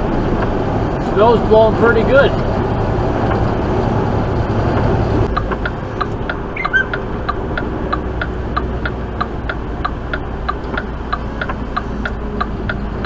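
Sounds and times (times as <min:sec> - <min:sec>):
road noise: 0:00.0 - 0:13.0
truck engine drone: 0:00.0 - 0:13.0
turn signal clicking: 0:04.7 - 0:13.0.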